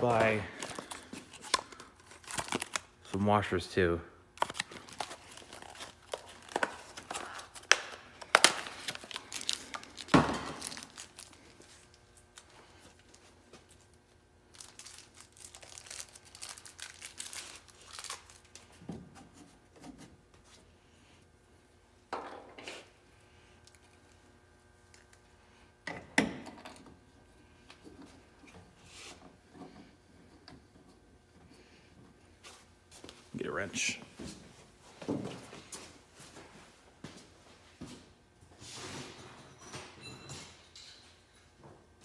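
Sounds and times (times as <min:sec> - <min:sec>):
plastic bag crinkling and tearing: 0:00.3 - 0:02.9, 0:04.4 - 0:13.2, 0:14.5 - 0:18.7.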